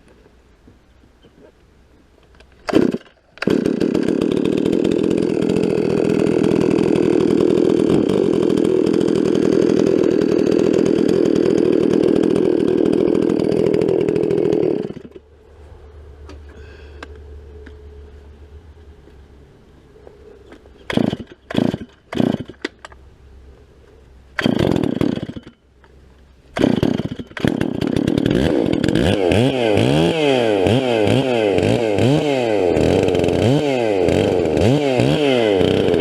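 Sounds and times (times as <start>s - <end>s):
chainsaw running at high speed: 2.7s - 15.2s, 20.9s - 22.6s, 24.4s - 25.6s, 26.6s - 36.0s.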